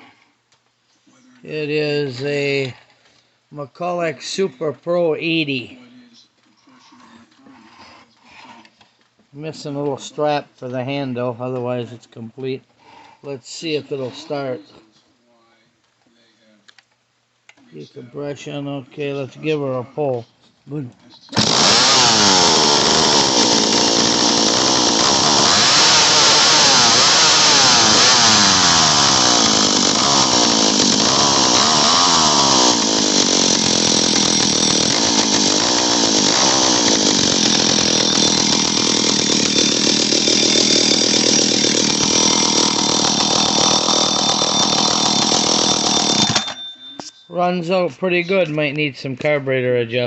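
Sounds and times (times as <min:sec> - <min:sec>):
chainsaw pull-start: 0:21.3 - 0:46.6
chainsaw engine revving: 0:21.4 - 0:46.5.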